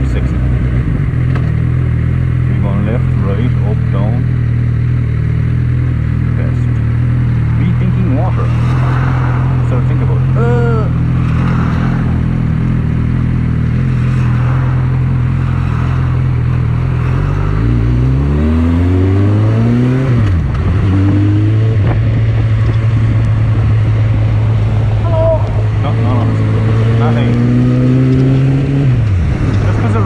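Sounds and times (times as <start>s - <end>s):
motorcycle engine revving: 0.0s - 30.0s
wind noise on microphone: 20.4s - 25.8s.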